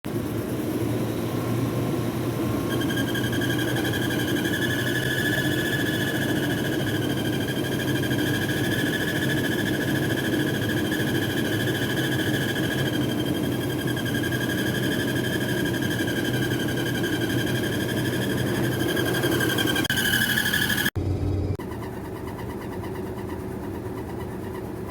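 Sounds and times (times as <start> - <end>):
engine humming: 0.1 - 24.9.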